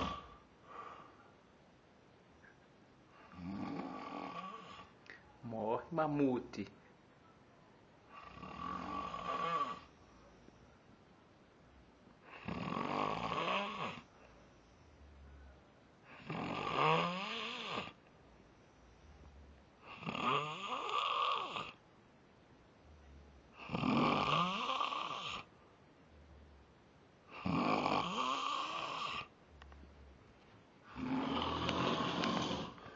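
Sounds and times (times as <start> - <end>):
man snoring: 0.0 - 0.4, 3.2 - 4.9, 8.1 - 9.9, 12.3 - 14.0, 16.1 - 18.0, 19.8 - 21.8, 23.6 - 25.5, 27.3 - 29.3, 30.9 - 32.9
quiet breaths: 0.0 - 32.9.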